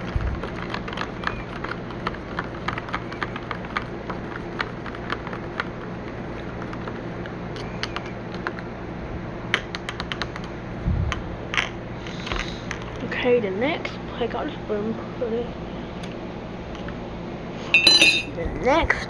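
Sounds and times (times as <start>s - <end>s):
steady low hum: 0.0s - 19.0s
spoon clinking in a mug: 17.8s - 18.3s.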